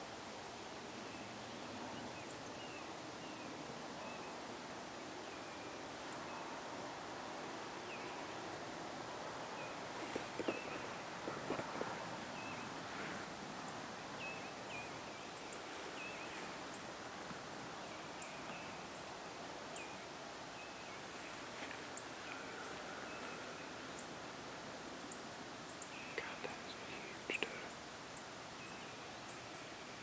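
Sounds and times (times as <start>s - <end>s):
faint steady hiss: 0.0s - 30.0s
small birds chirping: 7.3s - 30.0s.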